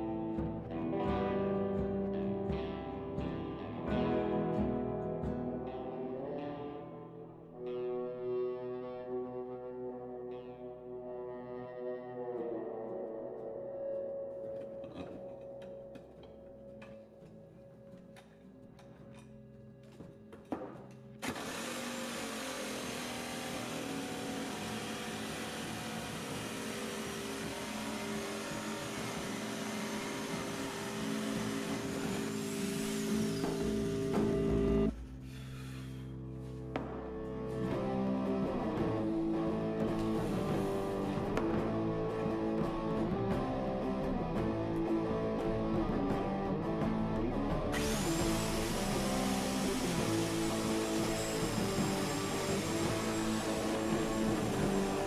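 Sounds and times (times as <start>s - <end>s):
guitar-led instrumental music: 0.0s - 55.0s
power tool motor whirring: 21.2s - 34.9s, 47.8s - 55.0s
hissing cutting noise: 21.2s - 35.8s, 39.0s - 41.6s, 47.7s - 55.0s.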